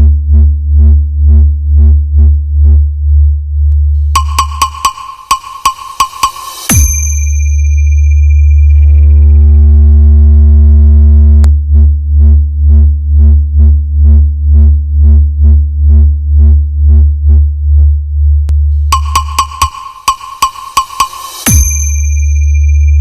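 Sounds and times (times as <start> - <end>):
deep synthesized bass tone: 0.0 - 20.6, 21.3 - 23.0
beat with sharp clicks: 3.7 - 9.6, 11.4 - 23.0.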